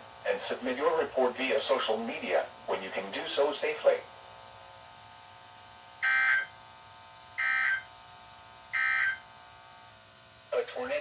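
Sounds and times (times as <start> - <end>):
short data bursts: 6.0 - 6.6, 7.4 - 7.9, 8.8 - 9.3.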